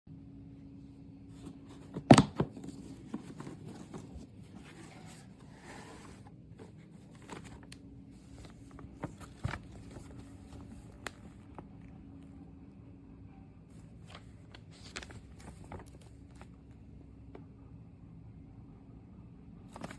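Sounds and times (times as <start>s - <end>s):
faint low hum: 0.1s - 19.9s
rustling: 1.4s - 11.6s, 13.8s - 16.6s.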